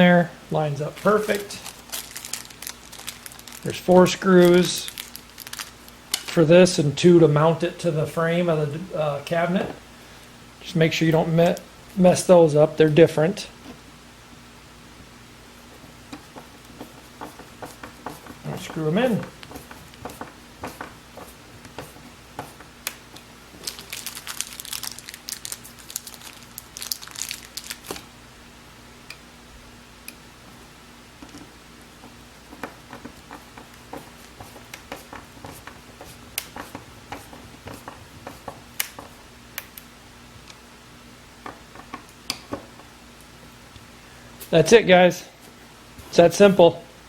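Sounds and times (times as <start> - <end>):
screws crackling and scraping: 1.0 - 6.4, 16.1 - 28.0.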